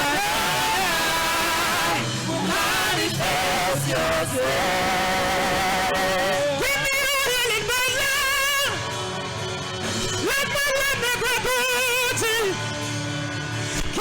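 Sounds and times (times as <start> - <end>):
person singing with vibrato: 0.0 - 8.9.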